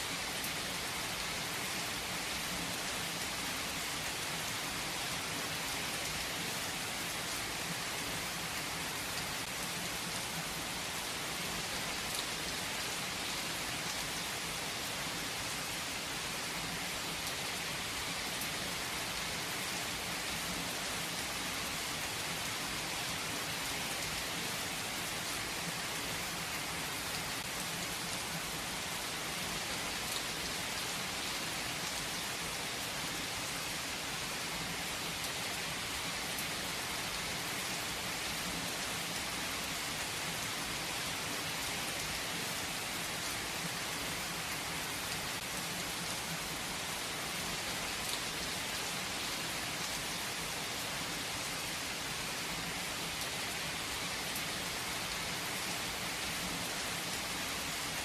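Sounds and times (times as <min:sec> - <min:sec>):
steady rain pattering: 0:00.0 - 0:58.0.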